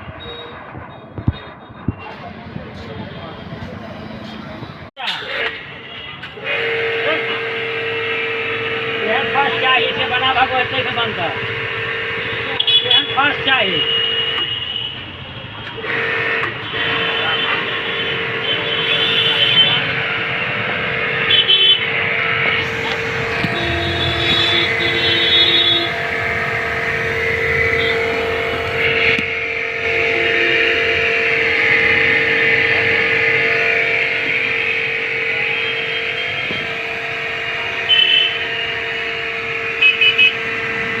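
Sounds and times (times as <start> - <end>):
machine humming: 15.8 - 41.0.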